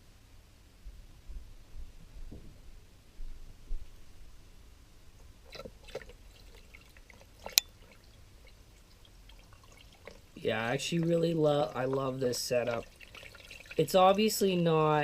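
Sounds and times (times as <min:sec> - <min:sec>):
water drips and small splashes: 0:05.4 - 0:15.0.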